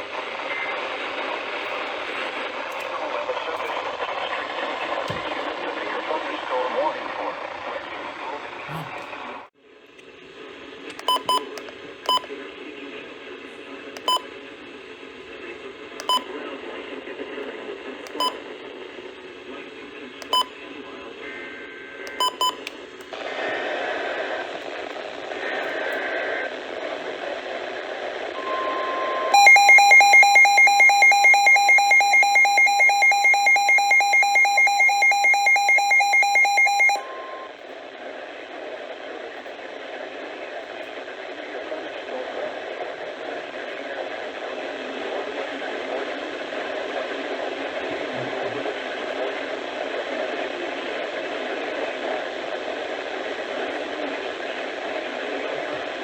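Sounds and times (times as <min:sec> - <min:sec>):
short beeps: 0:28.4 - 0:37.5
steady warning tone: 0:28.4 - 0:37.5
rapidly pulsing beep alarm: 0:28.6 - 0:37.5.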